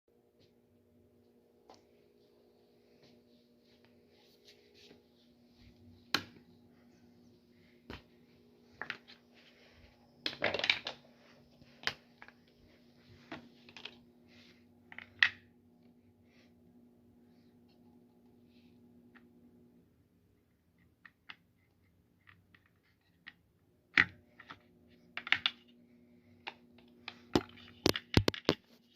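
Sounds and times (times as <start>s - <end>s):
low steady hum: 0.1s - 28.9s
plastic parts clicking and knocking: 10.2s - 11.1s, 20.8s - 25.7s, 26.4s - 28.8s.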